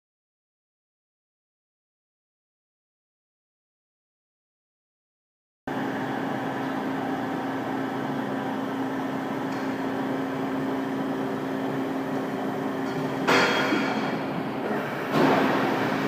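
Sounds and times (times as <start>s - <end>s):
hydraulic pump motor humming: 5.7s - 16.0s.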